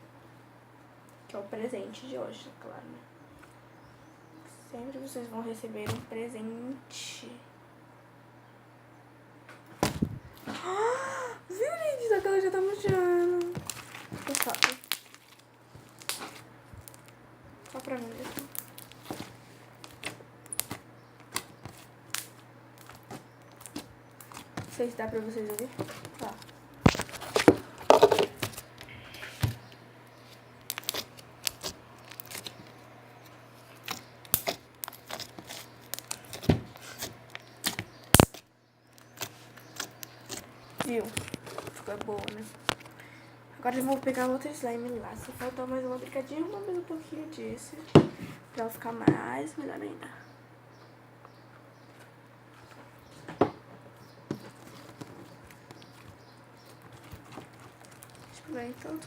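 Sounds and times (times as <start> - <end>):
steady low hum: 0.0 - 59.0
slime clicking and popping: 13.4 - 19.2, 19.8 - 24.6, 30.6 - 32.6, 33.8 - 38.4.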